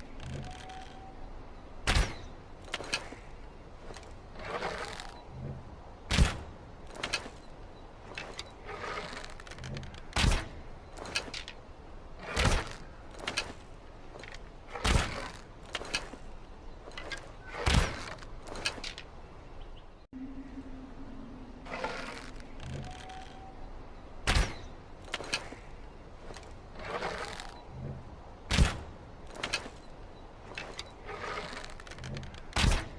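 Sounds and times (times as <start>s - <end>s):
rustling bow draw: 2.0s - 5.6s, 6.2s - 19.2s, 21.6s - 23.6s, 24.4s - 32.9s
low hum: 20.0s - 31.2s.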